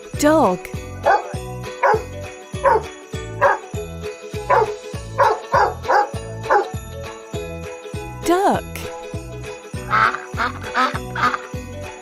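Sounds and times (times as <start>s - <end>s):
children's music with jingle bells: 0.0s - 12.0s
dog barking: 1.0s - 3.7s, 4.5s - 6.7s.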